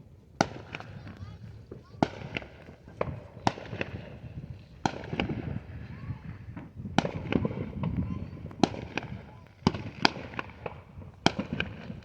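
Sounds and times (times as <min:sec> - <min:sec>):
rumble of fireworks bursts: 0:00.0 - 0:12.0
fireworks bangs and pops: 0:00.3 - 0:12.0.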